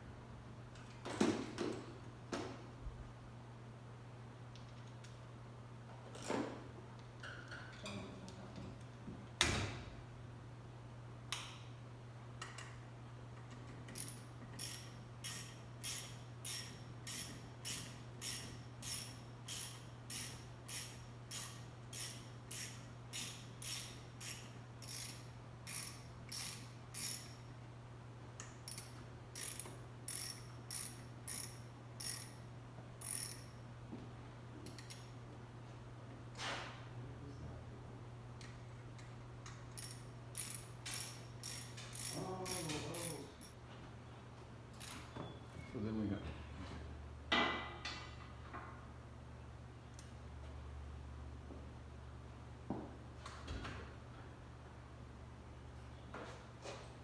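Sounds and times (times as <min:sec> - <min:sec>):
ratchet wrench clicking: 0:13.9 - 0:27.4, 0:28.6 - 0:32.4, 0:33.0 - 0:33.5, 0:34.6 - 0:35.1, 0:39.7 - 0:43.6, 0:44.8 - 0:45.0.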